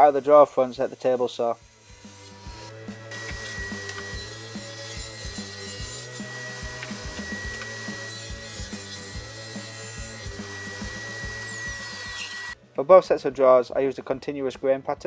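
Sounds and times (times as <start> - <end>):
table saw cutting plywood: 0.0 - 12.6
background music with beat: 5.2 - 9.3.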